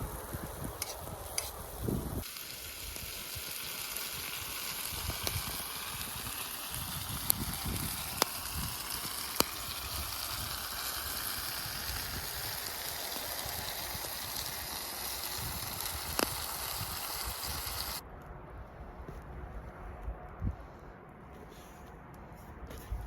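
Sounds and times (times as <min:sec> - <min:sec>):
food sizzling in a pan: 0:00.0 - 0:18.0
oil popping: 0:02.2 - 0:18.0.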